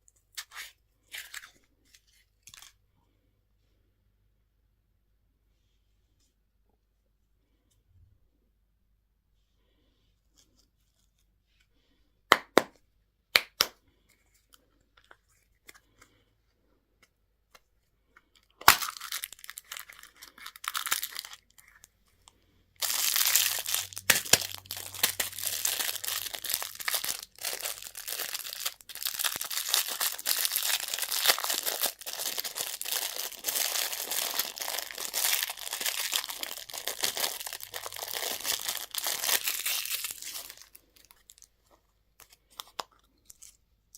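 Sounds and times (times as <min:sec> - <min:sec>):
packaging cracking: 0:18.6 - 0:21.8, 0:22.8 - 0:41.4
wrapper crinkling and tearing: 0:18.6 - 0:21.9, 0:22.8 - 0:41.5.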